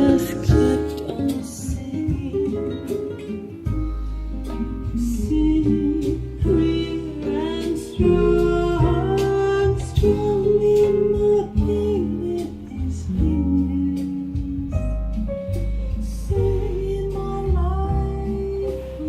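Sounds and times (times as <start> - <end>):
pop music over loudspeakers: 0.0 - 3.8, 4.5 - 15.4
person singing long notes: 4.7 - 14.8.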